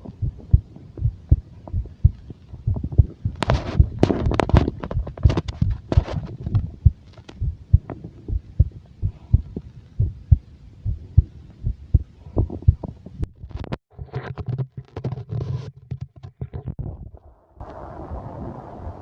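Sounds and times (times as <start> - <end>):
stomach growling: 0.0 - 9.8.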